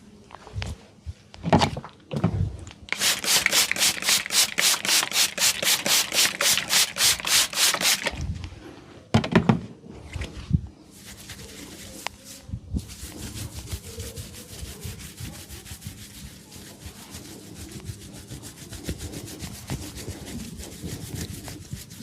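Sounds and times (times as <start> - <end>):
hands rubbing oiled hair: 2.9 - 8.2, 10.9 - 22.0.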